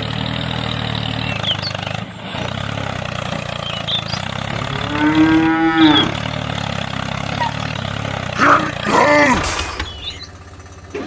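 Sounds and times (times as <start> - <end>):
small engine running: 0.0 - 11.0
cow mooing: 3.5 - 10.3.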